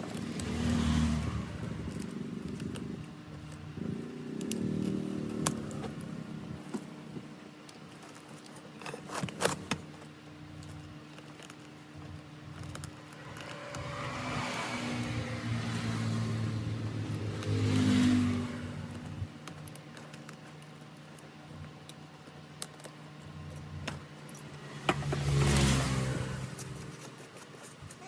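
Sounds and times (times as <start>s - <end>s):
vehicle engine passing by: 0.0s - 3.2s, 13.1s - 19.3s, 24.4s - 27.2s.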